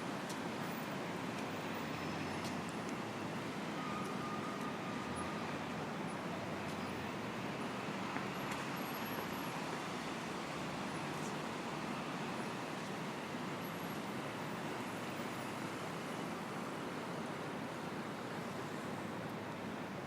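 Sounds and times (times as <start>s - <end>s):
passing traffic: 0.0s - 20.0s
faint high squeal: 3.8s - 5.5s.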